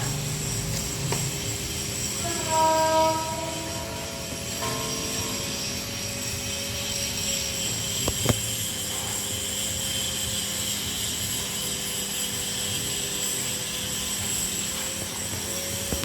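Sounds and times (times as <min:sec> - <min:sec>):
machine running: 0:00.0 - 0:16.0.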